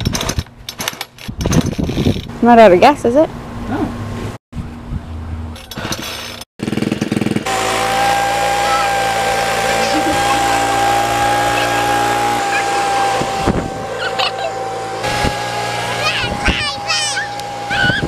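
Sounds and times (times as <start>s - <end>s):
small gasoline engine whining: 6.6s - 18.0s.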